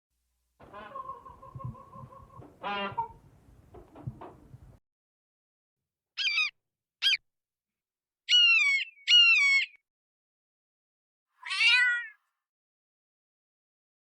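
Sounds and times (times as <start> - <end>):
animal high-pitched cries: 6.2 - 7.2, 8.3 - 9.8, 11.4 - 12.2.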